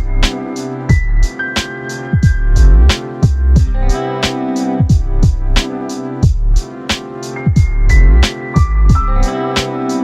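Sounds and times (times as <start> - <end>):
electronic music: 0.0 - 10.0
deep bass drops: 2.2 - 4.0, 4.9 - 5.6, 7.6 - 9.3.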